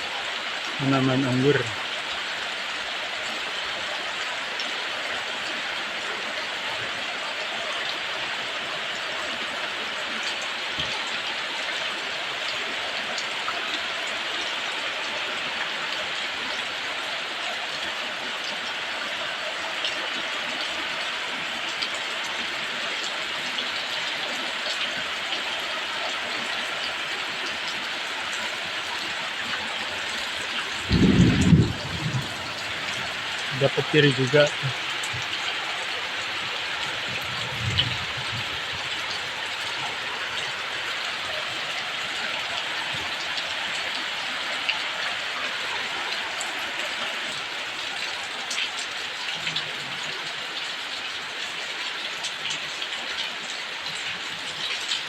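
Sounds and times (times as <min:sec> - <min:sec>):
heavy rain falling: 0:00.0 - 0:55.0
thunder rumble: 0:30.7 - 0:33.2.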